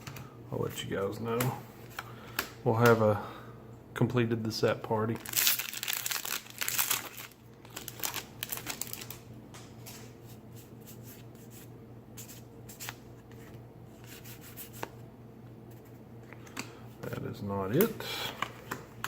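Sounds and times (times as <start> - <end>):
low steady hum: 0.0 - 19.0
trading cards rustling: 5.1 - 11.6.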